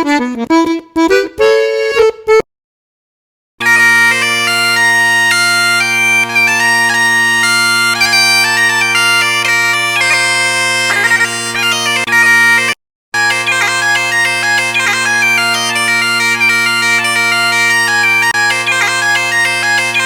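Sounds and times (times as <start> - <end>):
bagpipes playing a melody: 3.6 - 20.0.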